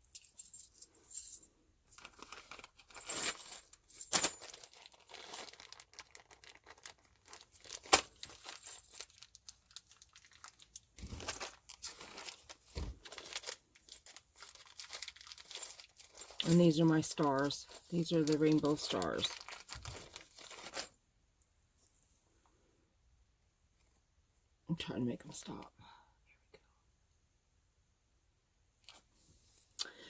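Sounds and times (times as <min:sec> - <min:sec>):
plastic bags crinkling: 0:01.9 - 0:21.0.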